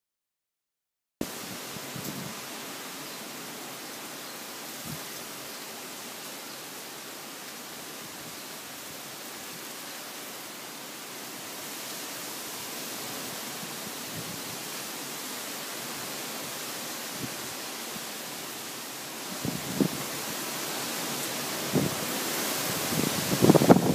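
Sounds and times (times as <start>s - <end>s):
storm wind rushing: 19.4s - 20.2s, 21.6s - 23.9s.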